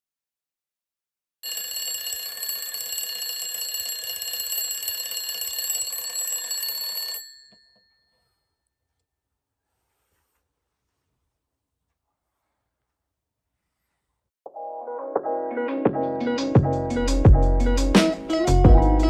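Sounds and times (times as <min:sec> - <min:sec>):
alarm bell ringing with rattle: 0:01.4 - 0:08.3.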